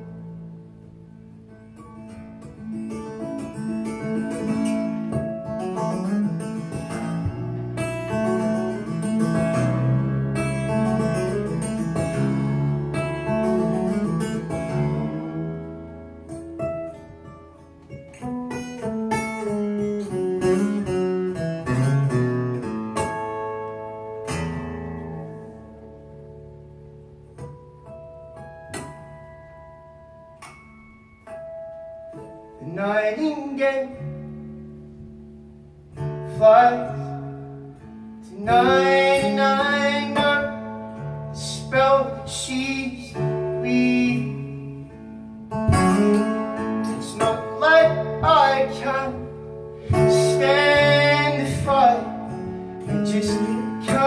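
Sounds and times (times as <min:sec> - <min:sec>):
fingerpicked acoustic guitar: 0:00.0 - 0:54.0.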